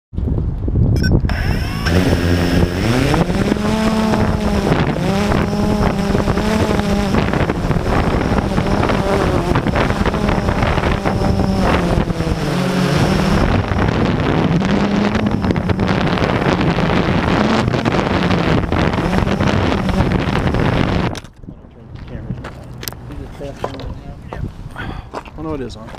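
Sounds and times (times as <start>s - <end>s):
wind buffeting microphone: 0.1s - 25.9s
drone propellers droning: 1.0s - 21.4s.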